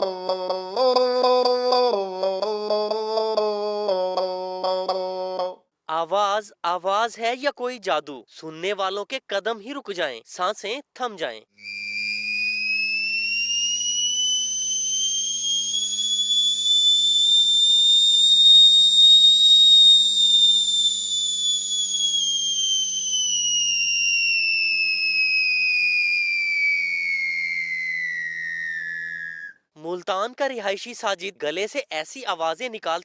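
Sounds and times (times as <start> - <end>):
man making whistle-like tone: 0.0 - 5.6, 11.6 - 29.7.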